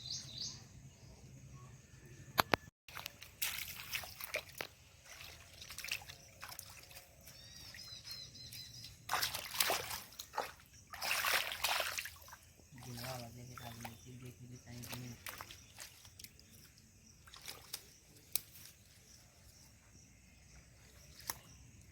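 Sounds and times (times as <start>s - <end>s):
bird chirping: 0.0s - 2.4s, 5.8s - 9.4s
flood water splashing: 2.9s - 7.9s, 8.6s - 16.4s, 17.2s - 18.4s.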